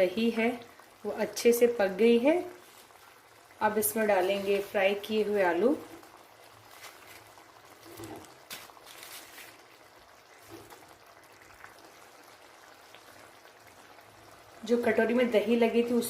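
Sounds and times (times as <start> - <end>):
liquid pouring: 2.5 - 14.7
food plopping into simmering pan: 5.2 - 14.2.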